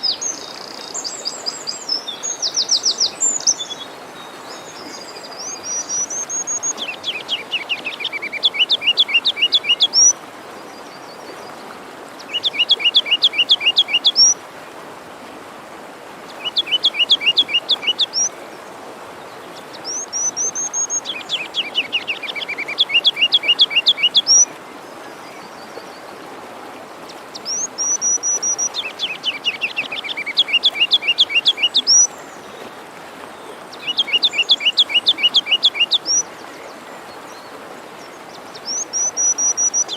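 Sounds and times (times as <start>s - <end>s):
songbird chirping: 0.0s - 10.2s, 12.2s - 14.4s, 16.4s - 18.4s, 19.3s - 24.6s, 27.1s - 32.7s, 33.3s - 39.9s
forest stream rushing: 0.0s - 39.9s.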